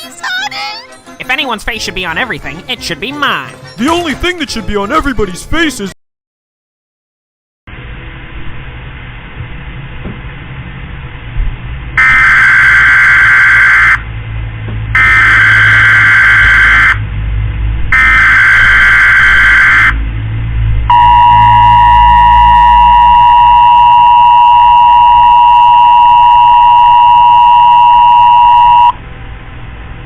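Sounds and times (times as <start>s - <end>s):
warbling data tones: 15.0s - 17.0s, 18.0s - 20.0s, 20.9s - 29.0s
steady alert tone: 20.9s - 29.0s.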